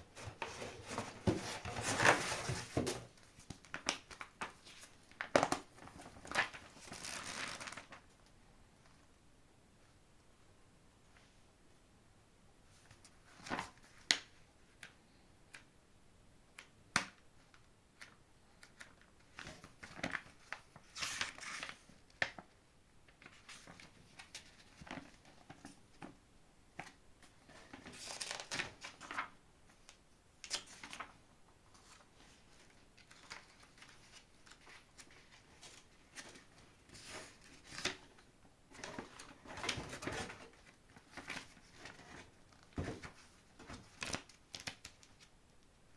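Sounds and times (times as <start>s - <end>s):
rustling and crinkling packaging: 0.0s - 8.2s, 26.8s - 45.3s.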